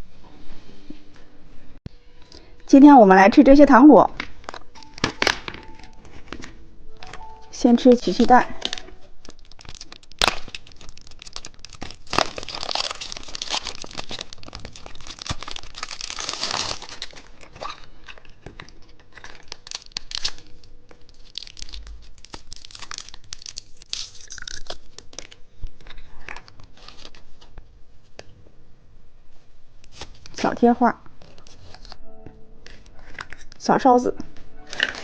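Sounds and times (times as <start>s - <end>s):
candy wrapper crinkling: 7.1s - 27.3s, 32.7s - 33.6s.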